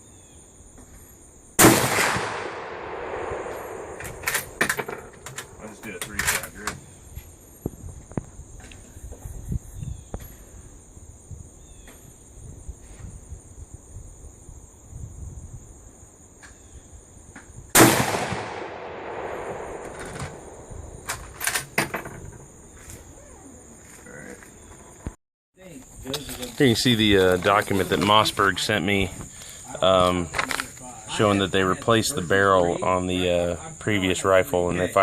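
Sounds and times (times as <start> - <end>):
rifle shot with echo: 1.6 - 5.6, 17.7 - 21.4.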